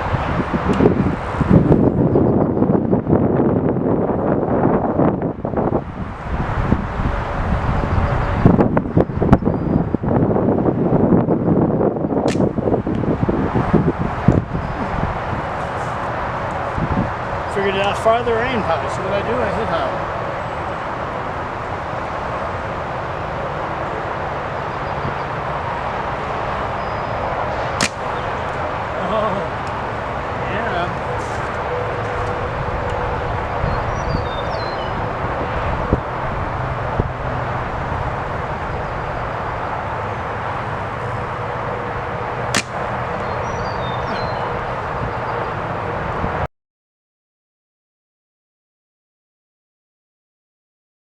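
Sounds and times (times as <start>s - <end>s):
wind buffeting microphone: 0.0s - 46.5s
sharp snap: 12.2s - 12.5s, 27.8s - 28.2s, 42.5s - 43.3s.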